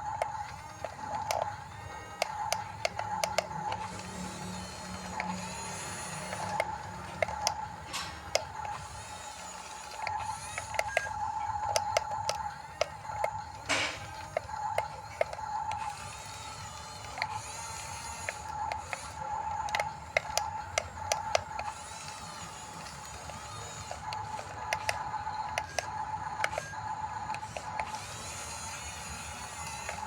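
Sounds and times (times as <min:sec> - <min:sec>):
electric motors whining: 0:00.0 - 0:30.0
sharp clicks of tracks and gears: 0:00.0 - 0:30.0.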